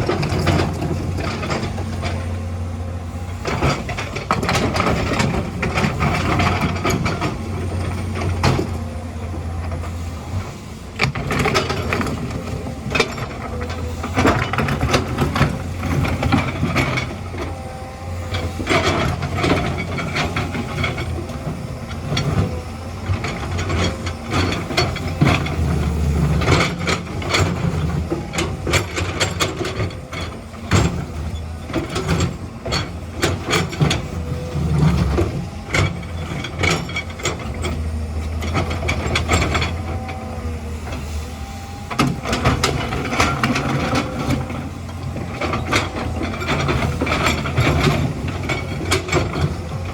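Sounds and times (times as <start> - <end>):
excavator diesel engine running: 0.0 - 49.9.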